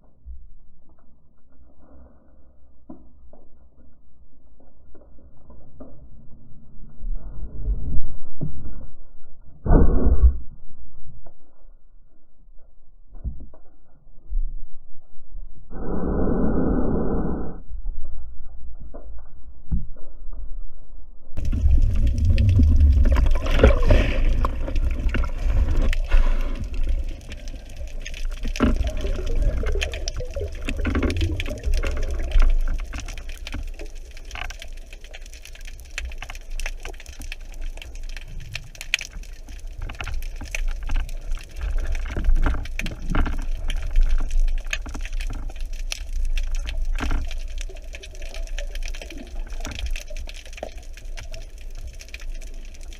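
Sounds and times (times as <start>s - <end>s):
clicks and crackles: 0.0s - 14.4s, 21.4s - 52.9s
underwater rushing water: 21.4s - 52.9s.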